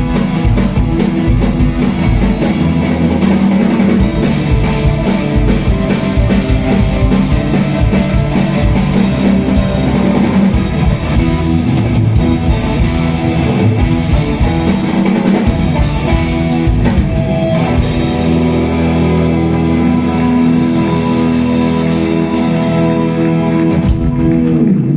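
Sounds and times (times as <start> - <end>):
dense drumming: 0.0 - 20.0
guitar chords ringing: 0.0 - 24.4
rock band playing: 0.0 - 24.9.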